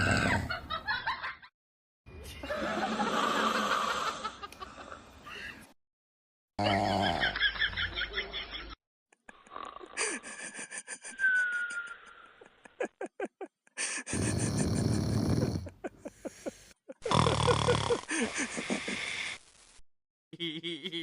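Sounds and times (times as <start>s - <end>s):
dog snoring: 14.1s - 15.7s.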